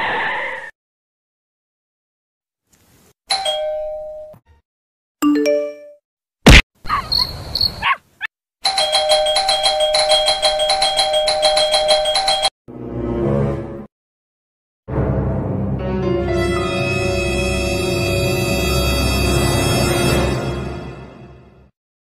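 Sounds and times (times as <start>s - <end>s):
two-tone doorbell: 3.3s - 4.4s, 8.6s - 12.5s
doorbell rung rapidly: 8.6s - 12.5s.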